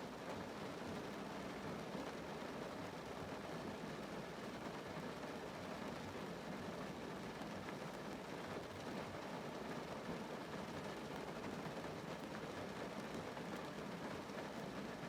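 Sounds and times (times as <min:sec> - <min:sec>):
rain pattering on a car: 0:00.0 - 0:15.0.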